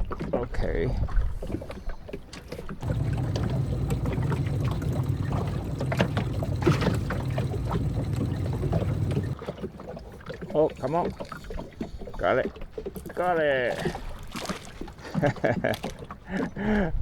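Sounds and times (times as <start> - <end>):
boat motor humming: 2.7 - 10.5.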